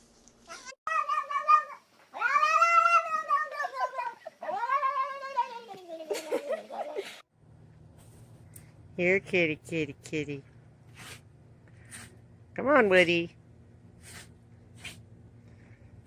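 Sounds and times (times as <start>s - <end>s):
cat yowling: 0.5s - 5.7s.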